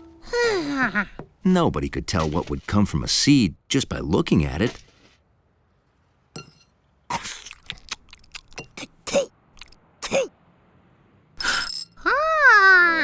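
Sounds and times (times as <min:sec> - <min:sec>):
cartoon clicks and clinks: 0:07.6 - 0:08.9, 0:11.4 - 0:12.1.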